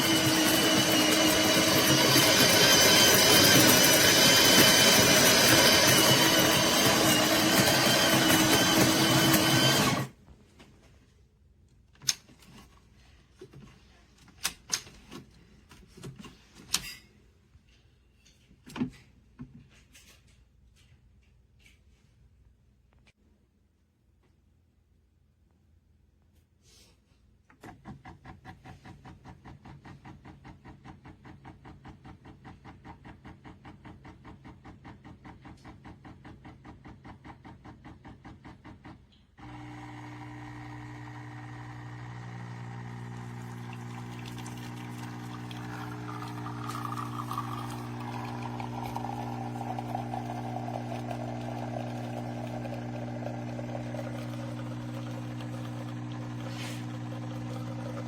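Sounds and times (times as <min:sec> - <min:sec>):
espresso machine motor hum: 0:00.0 - 0:10.1, 0:39.4 - 0:58.0
espresso machine pulsing: 0:00.0 - 0:10.1, 0:39.4 - 0:58.0.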